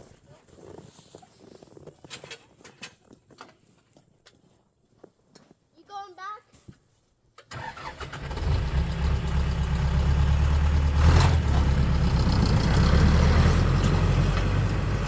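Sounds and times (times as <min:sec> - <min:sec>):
vehicle engine running: 0:08.1 - 0:15.0.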